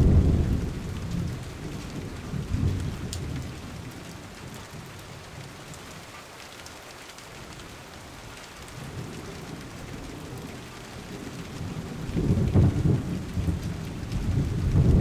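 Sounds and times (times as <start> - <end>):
low rumble of thunder: 0.0 - 5.5, 8.8 - 15.0
steady rain: 0.0 - 15.0
rain drop ticks: 0.1 - 4.7, 6.4 - 15.0.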